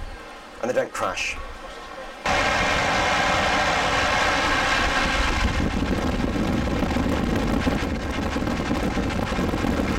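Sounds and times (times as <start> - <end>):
train passing: 1.8 - 6.9.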